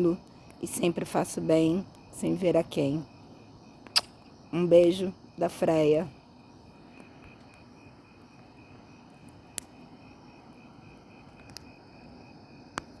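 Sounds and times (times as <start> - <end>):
steady low hiss: 0.0 - 13.0
sharp clicks: 3.9 - 4.2.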